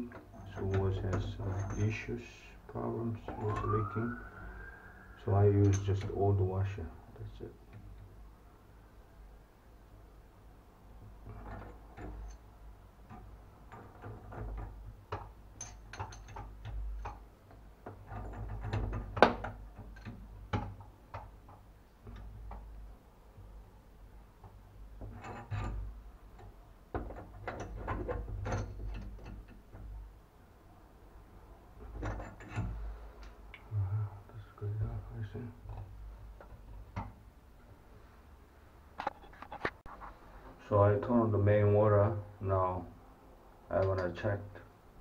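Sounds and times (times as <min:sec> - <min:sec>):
tools and parts rattling: 0:00.2 - 0:02.1, 0:13.0 - 0:22.8, 0:24.5 - 0:30.0, 0:31.8 - 0:32.8.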